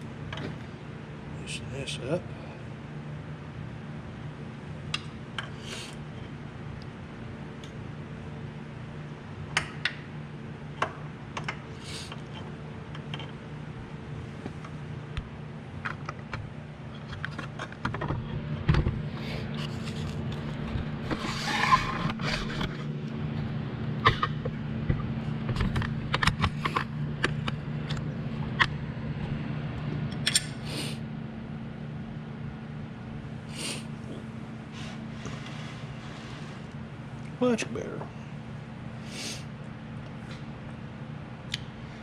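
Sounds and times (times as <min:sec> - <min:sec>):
steady low hum: 0:00.0 - 0:42.0
metal scrape: 0:21.1 - 0:22.6.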